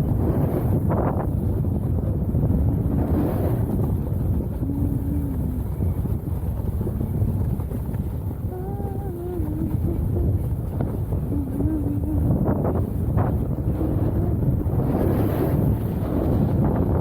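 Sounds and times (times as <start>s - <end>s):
wind buffeting microphone: 0.0s - 17.0s
faint low hums: 1.8s - 17.0s.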